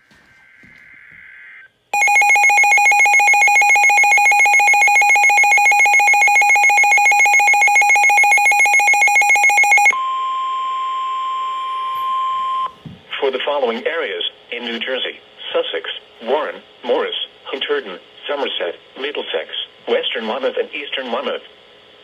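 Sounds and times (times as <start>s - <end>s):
steady warning tone: 0.2s - 12.7s
rapidly pulsing electronic alarm: 0.4s - 10.0s
radio hiss: 13.1s - 21.5s.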